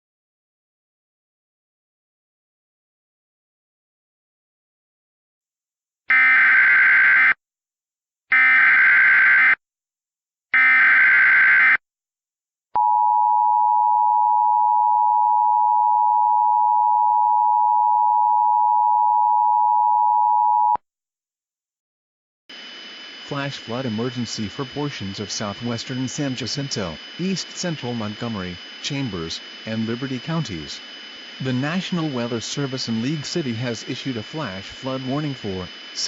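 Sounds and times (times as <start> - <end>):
warbling data tones: 22.5 - 36.0.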